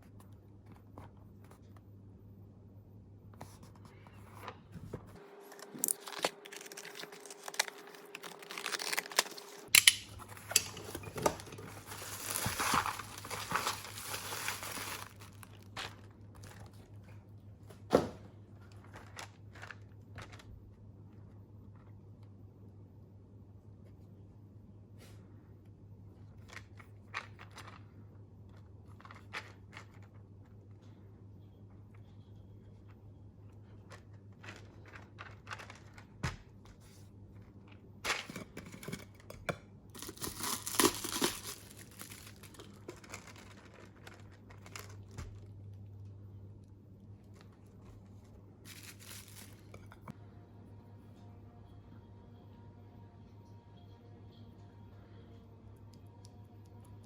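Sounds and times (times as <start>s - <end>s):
low steady hum: 0.0s - 57.0s
packaging crinkling and tearing: 5.2s - 16.9s, 34.2s - 36.2s, 40.0s - 45.5s, 48.7s - 50.0s.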